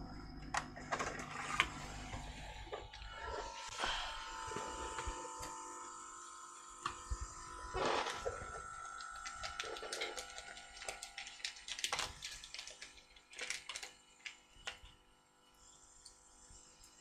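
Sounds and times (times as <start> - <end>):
faint steady whine: 0.0 - 13.4
small objects clicking and tapping: 8.6 - 15.0.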